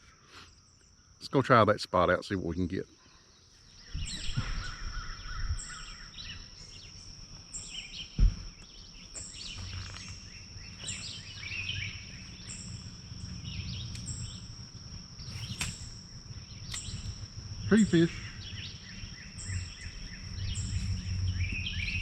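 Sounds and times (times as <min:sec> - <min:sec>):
birds calling and chirping: 0:02.7 - 0:22.0
sharp thump: 0:08.2 - 0:08.6
high-pitched insect drone: 0:09.1 - 0:22.0.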